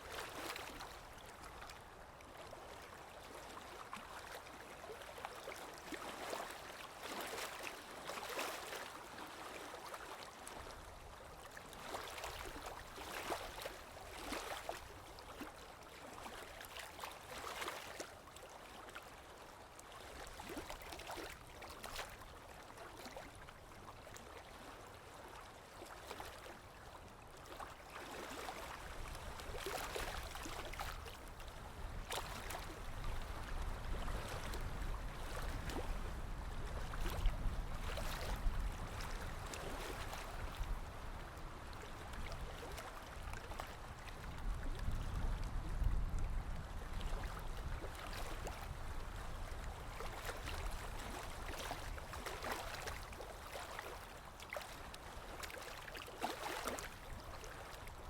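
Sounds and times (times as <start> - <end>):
small splashes: 50.0 - 57.7.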